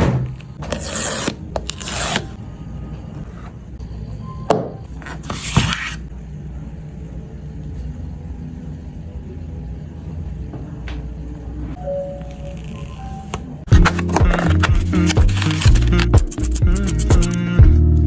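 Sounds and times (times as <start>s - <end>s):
hands scraping packaging: 13.8s - 17.4s.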